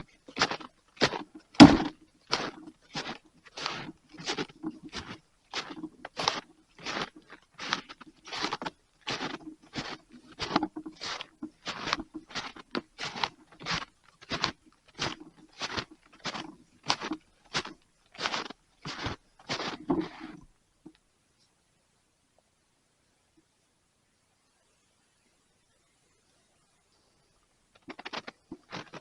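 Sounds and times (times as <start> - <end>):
footsteps crunching in snow: 0.0 - 20.4, 27.8 - 29.0.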